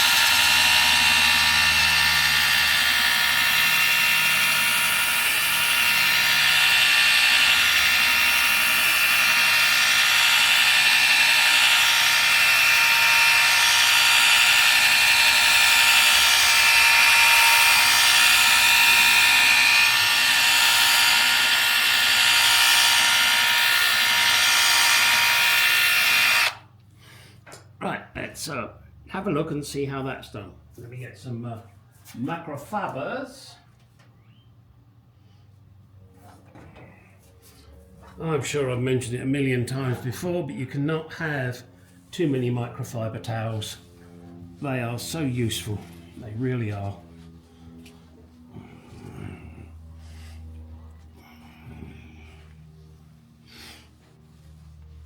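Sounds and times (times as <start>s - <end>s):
right-angle drill whining: 0.0s - 26.6s.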